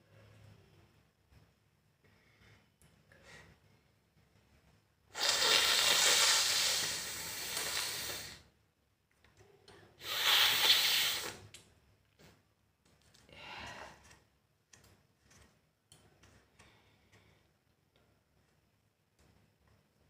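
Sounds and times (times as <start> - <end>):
person blowing nose: 5.1 - 8.4, 10.0 - 11.4.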